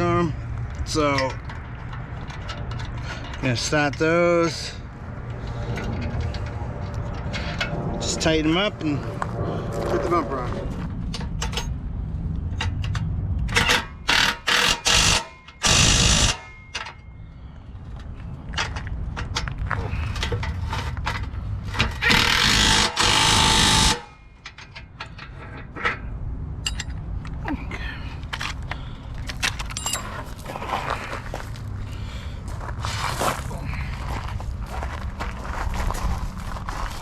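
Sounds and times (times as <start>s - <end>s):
cordless power driver bursts: 14.0s - 16.4s, 22.0s - 24.2s.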